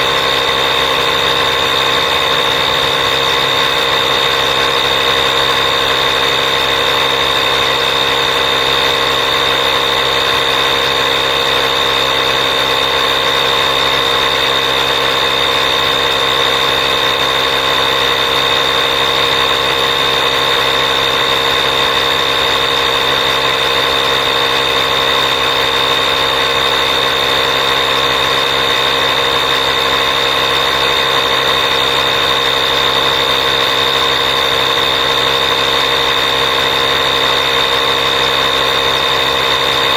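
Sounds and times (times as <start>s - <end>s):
machine humming with high whine: 0.0s - 39.9s.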